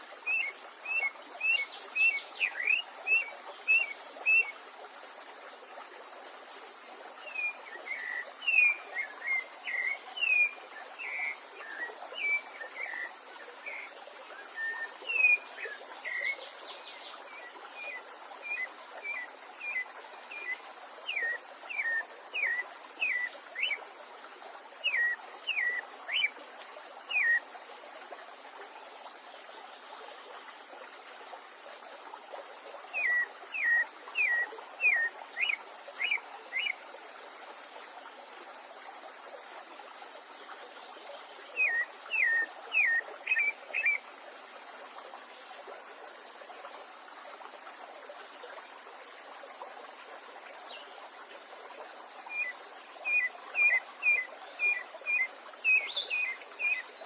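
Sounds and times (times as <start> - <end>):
stream rushing: 0.0 - 57.0
songbird whistling: 41.6 - 44.0.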